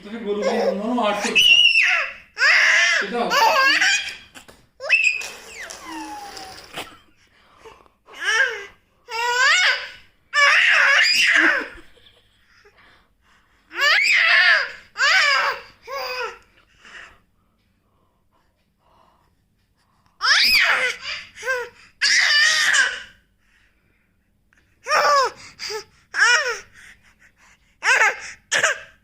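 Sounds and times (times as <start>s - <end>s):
baby laughing and squealing: 0.3s - 7.0s, 9.1s - 11.8s, 20.2s - 23.1s.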